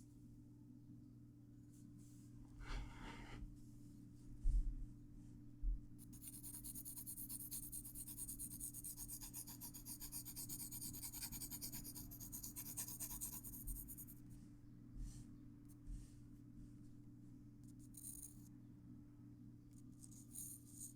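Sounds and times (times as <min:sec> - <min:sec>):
pencil scratching on paper: 0:06.0 - 0:14.2.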